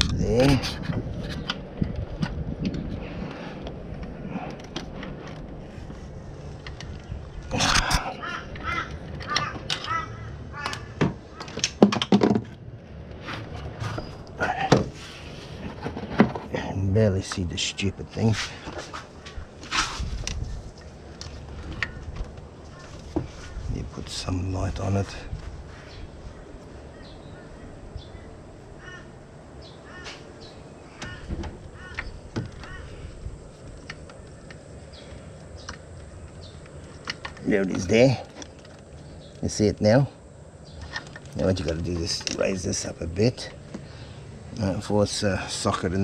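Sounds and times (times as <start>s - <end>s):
crow cawing: 7.7s - 11.6s, 28.8s - 29.2s, 29.8s - 33.2s
tools and parts knocking: 10.6s - 12.6s.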